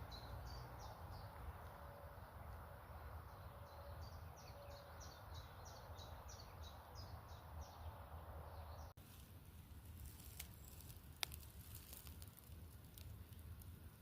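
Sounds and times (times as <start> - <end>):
small bird singing: 0.0 - 1.4, 3.2 - 9.0.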